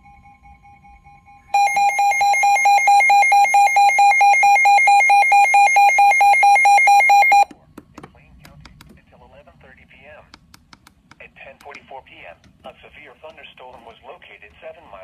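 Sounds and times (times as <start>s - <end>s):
weather radio alarm beeping: 0.0s - 7.5s
faint steady tones: 0.0s - 7.6s.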